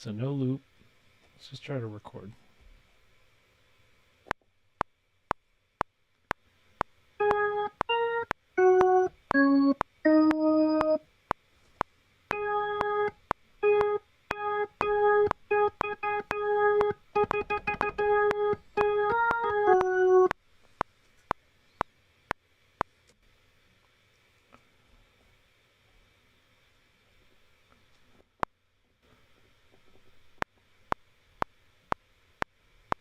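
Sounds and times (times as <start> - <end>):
metronome clicking: 6.8 - 11.0, 12.3 - 20.4
keyboard instrument short notes: 12.3 - 20.3.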